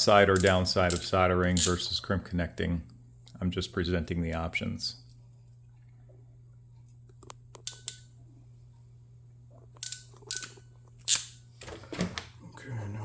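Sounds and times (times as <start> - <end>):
ratcheting crimp tool clicks: 0.3 - 1.8.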